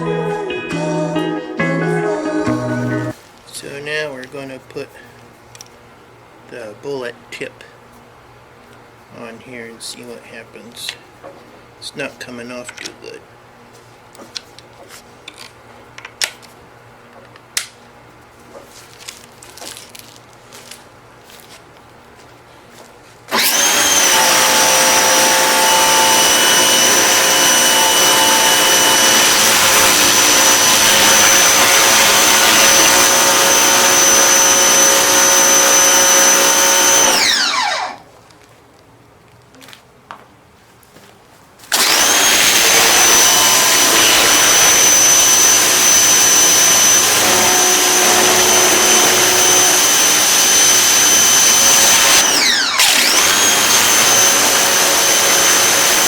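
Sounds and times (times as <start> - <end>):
pressure washer motor whining: 23.3 - 38.0, 41.7 - 56.0.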